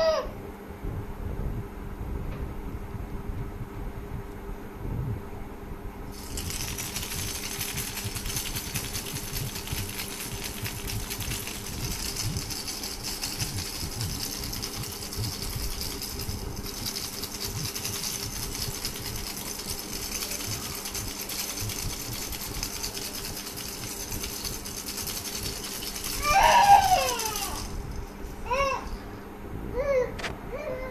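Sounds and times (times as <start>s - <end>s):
baby wailing: 0.0s - 0.3s, 26.2s - 27.7s
baby rattle shaken rapidly: 6.1s - 28.9s.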